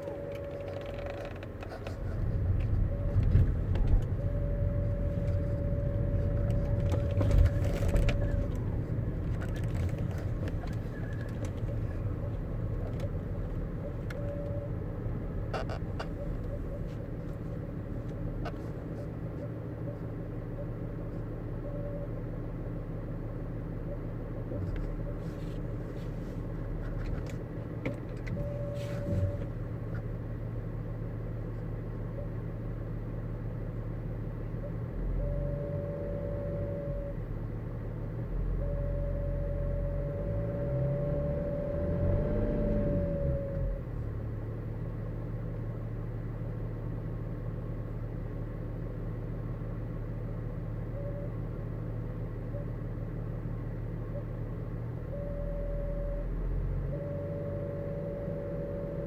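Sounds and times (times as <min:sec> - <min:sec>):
diesel engine running: 0:00.0 - 0:59.0
engine revving: 0:38.6 - 0:43.5.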